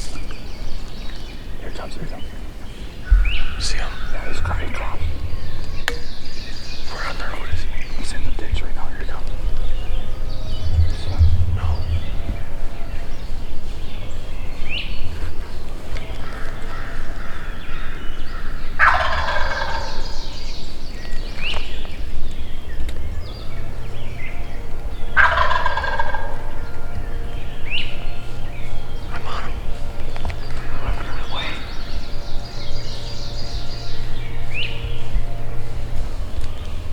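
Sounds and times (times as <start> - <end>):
turkey gobbling: 18.8 - 20.4, 25.1 - 26.8.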